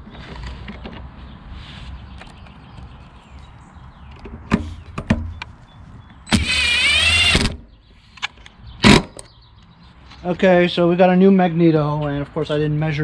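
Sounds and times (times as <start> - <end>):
mechanical whir: 6.3 - 7.6, 8.8 - 9.3
tools clicking on engine: 6.3 - 7.6, 8.8 - 9.3.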